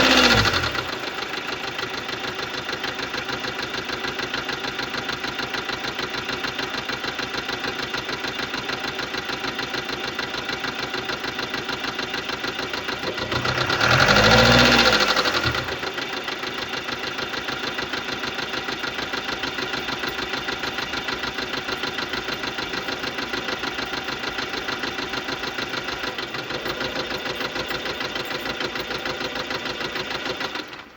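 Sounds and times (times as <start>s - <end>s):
diesel engine idling: 0.0s - 30.9s.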